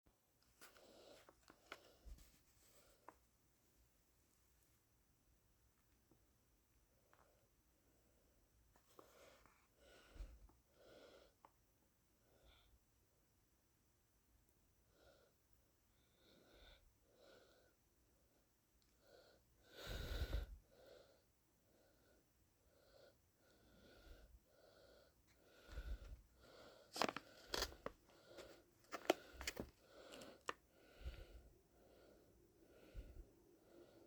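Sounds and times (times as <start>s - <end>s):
heavy wheezy breathing: 19.2s - 21.2s
bag crackling and clicking: 26.9s - 30.6s.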